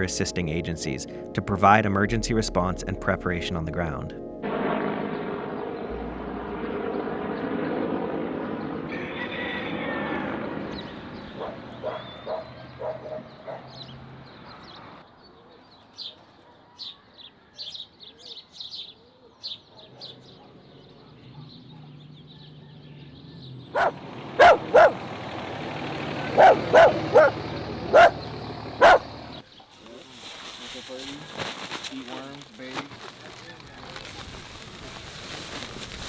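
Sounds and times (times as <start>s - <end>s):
dog barking: 11.4s - 13.9s, 19.6s - 22.0s, 23.7s - 25.0s, 26.3s - 28.2s, 28.8s - 29.1s.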